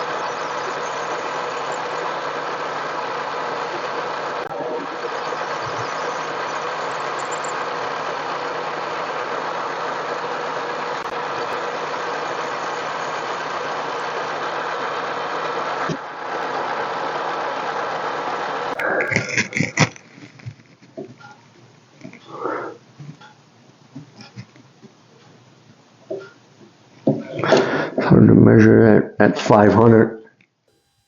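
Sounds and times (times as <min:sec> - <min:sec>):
lathe motor humming: 0:00.0 - 0:27.2, 0:30.7 - 0:31.0.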